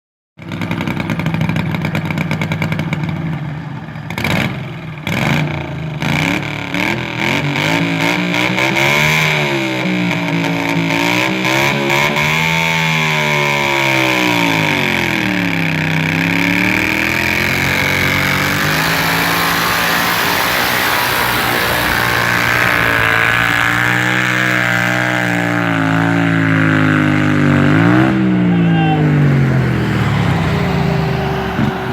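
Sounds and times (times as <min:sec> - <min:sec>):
tractor engine revving: 0:00.4 - 0:31.9
supercharger whine: 0:09.6 - 0:31.9.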